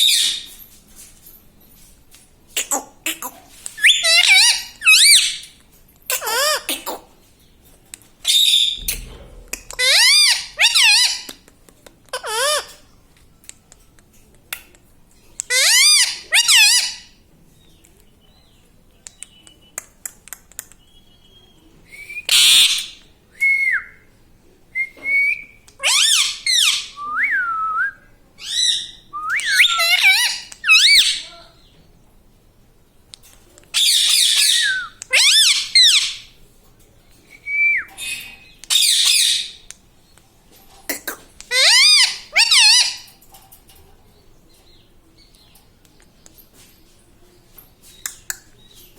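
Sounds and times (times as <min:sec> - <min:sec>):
parrot squawking: 0:08.3 - 0:11.3, 0:41.0 - 0:43.1.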